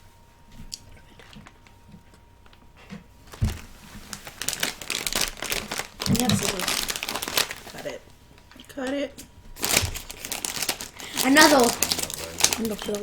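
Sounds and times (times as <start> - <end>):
plastic snack packet crinkling: 3.2 - 8.8, 9.5 - 13.0.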